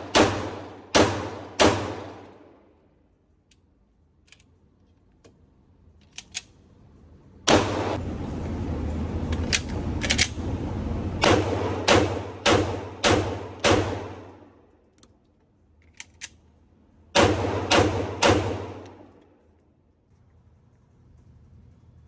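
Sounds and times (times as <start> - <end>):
airsoft pistol shots: 0.0 - 2.4, 7.5 - 8.0, 11.2 - 14.4, 17.2 - 19.1
light clicking and handling: 3.3 - 6.6, 14.7 - 16.6.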